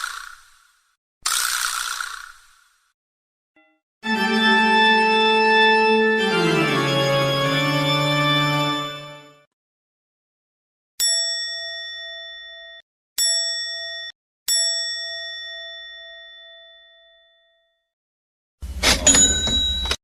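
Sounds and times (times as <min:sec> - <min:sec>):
bell-like ding: 0:03.6 - 0:05.1, 0:19.0 - 0:20.0
cash register sound effect: 0:18.6 - 0:20.0.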